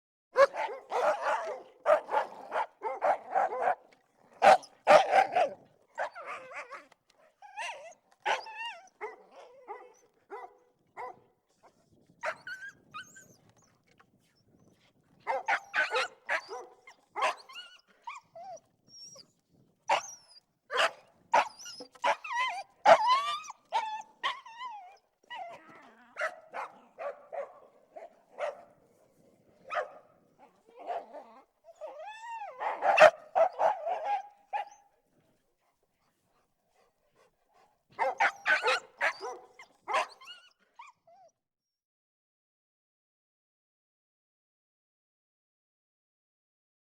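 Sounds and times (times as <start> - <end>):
dogs barking: 0.4 - 3.8, 4.4 - 6.8, 8.3 - 11.2, 15.3 - 17.5, 19.9 - 24.5, 25.4 - 28.8, 29.6 - 34.8, 38.0 - 40.3.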